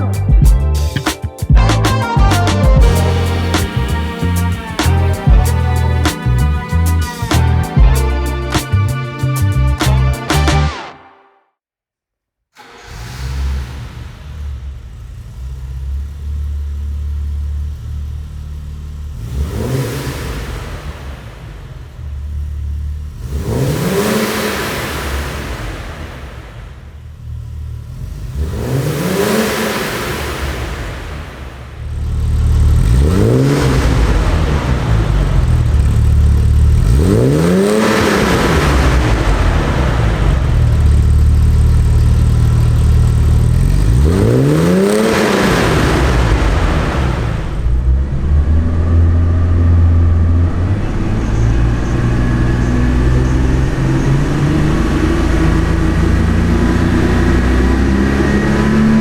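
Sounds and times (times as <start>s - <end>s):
car engine revving and idling: 1.5s - 10.7s, 12.6s - 59.0s.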